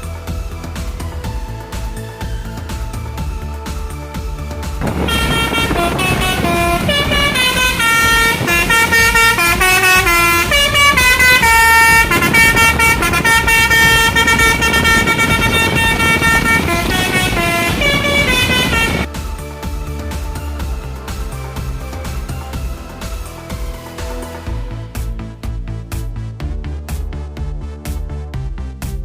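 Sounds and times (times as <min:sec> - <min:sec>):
low rumble: 0:00.0 - 0:27.8
bus horn playing multi-note tune: 0:04.8 - 0:19.1.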